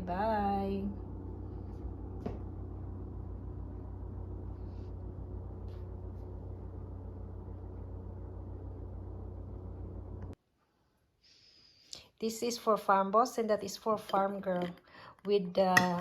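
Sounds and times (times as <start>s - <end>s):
low hum: 0.0s - 10.4s.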